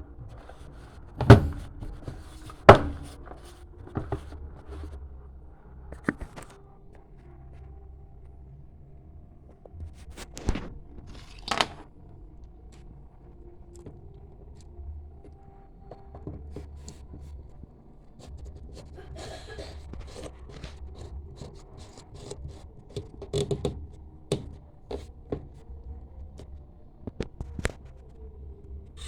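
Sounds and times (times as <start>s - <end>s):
scraping: 0.0s - 5.2s
small parts clicking and knocking: 10.4s - 11.9s.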